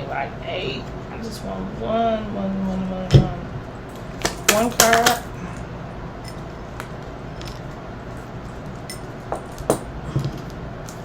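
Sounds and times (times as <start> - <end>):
steady low hum: 0.0 - 11.0
cards clicking and tapping: 3.9 - 5.3.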